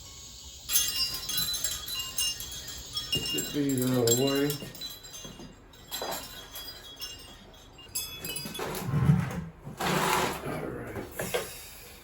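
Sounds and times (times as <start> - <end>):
metal wind chimes clinking: 0.0 - 9.0.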